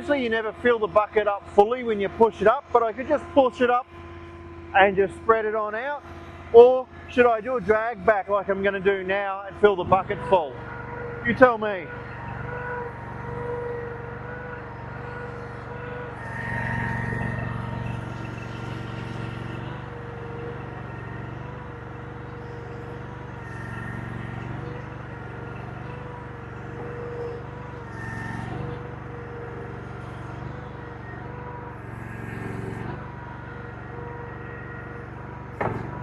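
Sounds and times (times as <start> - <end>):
hydraulic whine: 0.0 - 36.0
skid steer engine running: 0.0 - 36.0.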